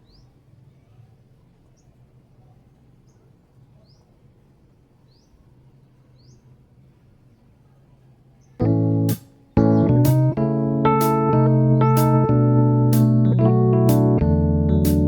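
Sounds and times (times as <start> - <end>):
faint bird chirps: 0.0 - 4.4, 5.0 - 8.6
electric piano music: 8.6 - 15.0
low steady hum: 8.6 - 15.0.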